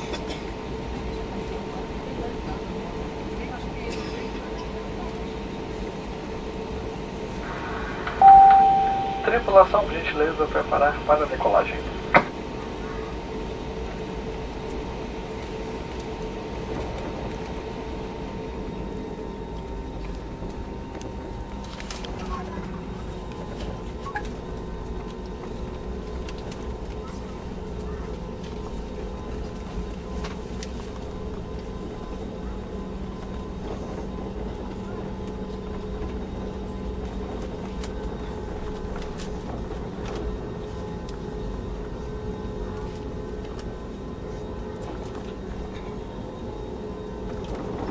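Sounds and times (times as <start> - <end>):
low engine rumble: 6.6 - 47.9
faint steady hum: 7.4 - 13.1.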